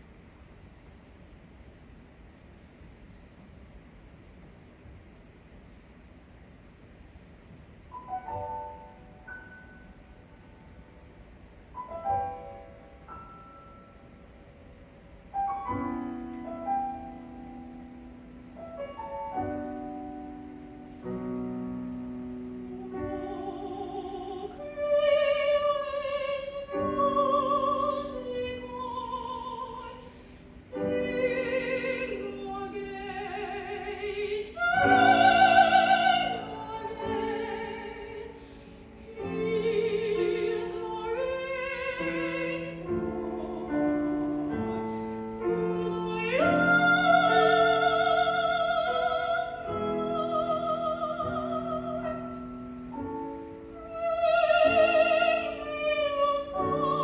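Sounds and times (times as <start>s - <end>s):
piano accompaniment: 7.9s - 57.0s
soprano singing with vibrato: 21.8s - 57.0s.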